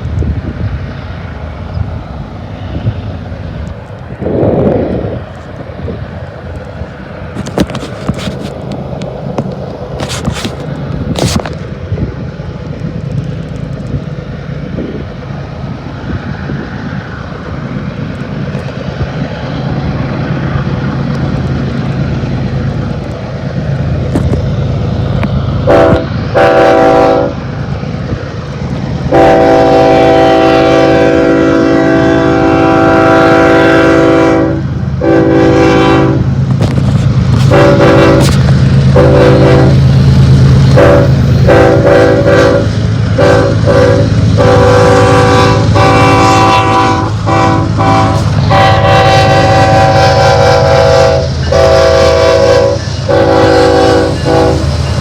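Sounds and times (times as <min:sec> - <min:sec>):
diesel locomotives rumbling: 0:00.0 - 0:55.0
train air horn blasts: 0:25.6 - 0:27.4, 0:29.1 - 0:36.7, 0:37.4 - 0:39.9, 0:40.7 - 0:55.0.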